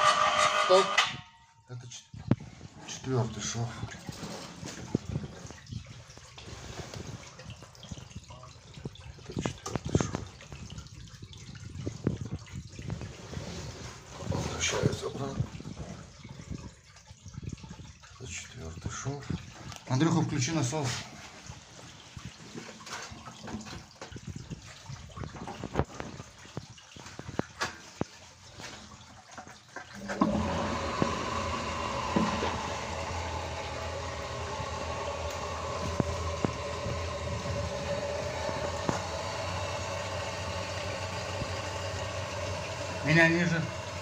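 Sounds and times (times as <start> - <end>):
water pump running: 0.0 - 1.3, 2.1 - 44.0
water dripping and trickling: 1.3 - 44.0.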